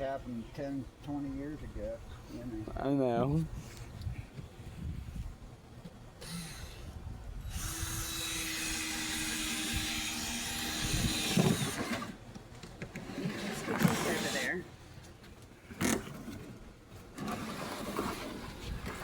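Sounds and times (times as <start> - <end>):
power drill driving screws into wood: 7.5 - 12.2, 13.2 - 14.5.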